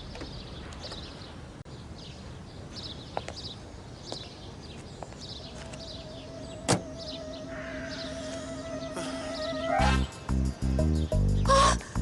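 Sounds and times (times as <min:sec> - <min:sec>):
small birds chirping: 0:00.0 - 0:12.0
steady held tone: 0:05.7 - 0:10.1.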